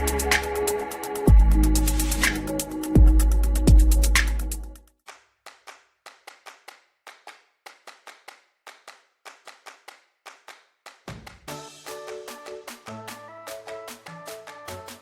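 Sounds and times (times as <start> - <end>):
music: 0.0 - 4.9, 11.1 - 15.0
sharp clap-like percussion hits: 2.0 - 15.0.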